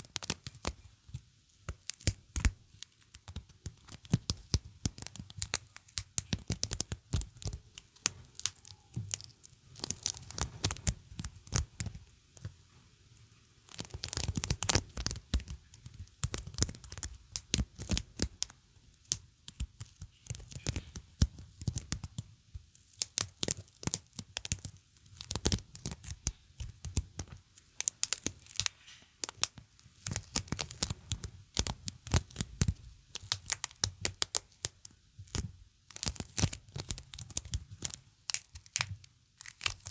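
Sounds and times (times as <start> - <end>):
sticky surface peeling crackle: 1.8 - 12.0, 35.3 - 39.9.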